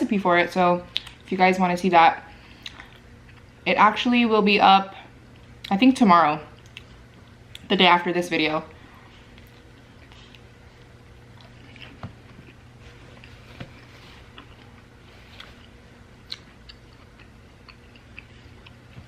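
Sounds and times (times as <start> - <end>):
low steady hum: 0.0 - 19.0
wet mouth chewing: 6.5 - 7.7, 11.3 - 12.6, 14.2 - 19.0.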